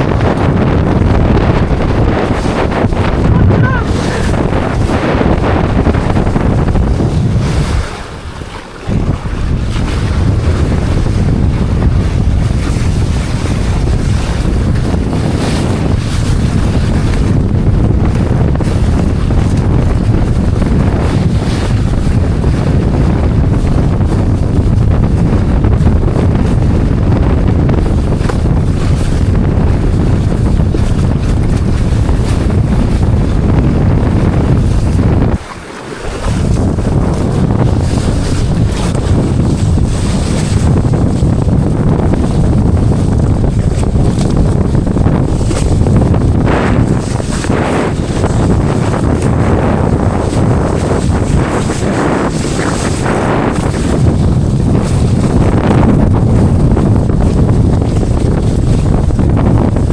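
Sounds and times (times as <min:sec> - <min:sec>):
rushing water: 0:00.0 - 0:59.9
wind buffeting microphone: 0:00.0 - 0:59.9.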